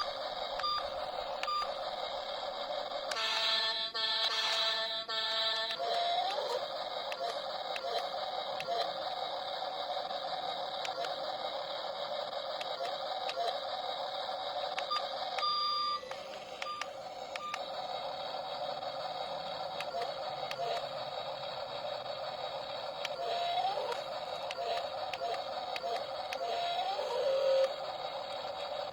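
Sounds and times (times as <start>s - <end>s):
toy motor whining: 0.0s - 28.9s
scattered clicks: 10.7s - 11.2s, 12.6s - 13.6s, 19.4s - 21.1s, 22.2s - 28.9s.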